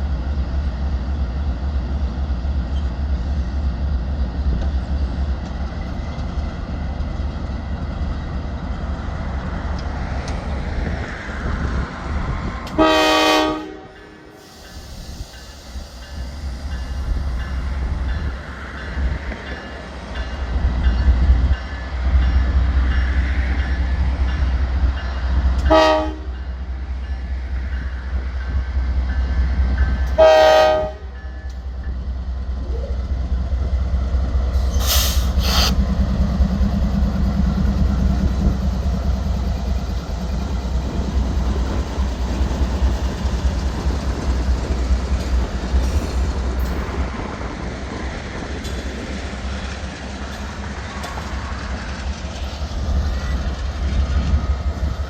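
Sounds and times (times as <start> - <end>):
train rumbling past: 0.0 - 55.0
locomotive horn blasts: 12.8 - 14.4, 25.7 - 26.4, 30.2 - 31.4.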